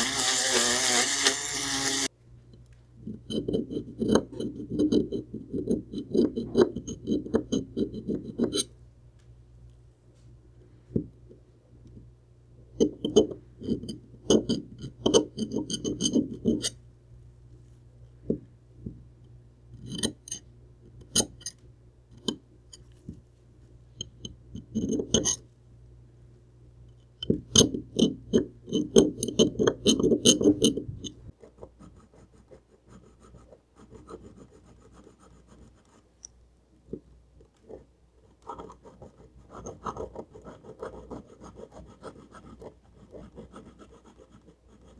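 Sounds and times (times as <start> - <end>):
rotary tool grinding metal: 0.0 - 2.1
rotary tool motor humming: 0.0 - 2.1
light scraping and rubbing: 13.0 - 16.8, 24.1 - 25.5.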